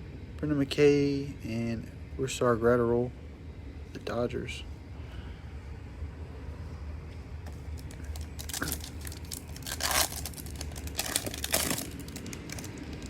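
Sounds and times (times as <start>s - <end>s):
foil pack tearing and crinkling: 7.8s - 13.0s.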